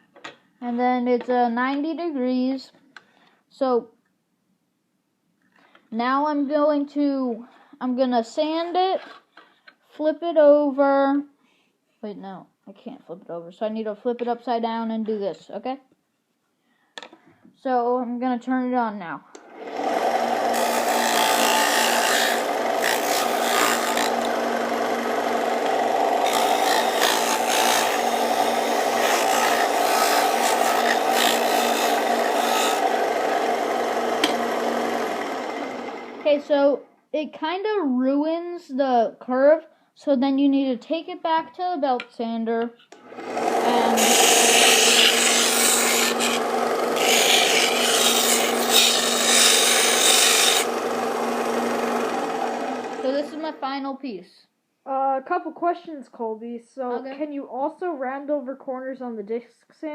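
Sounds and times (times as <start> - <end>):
disc sander motor humming: 19.4 - 36.2, 43.0 - 53.4
wood sanding on abrasive disc: 20.0 - 35.2, 43.6 - 53.5.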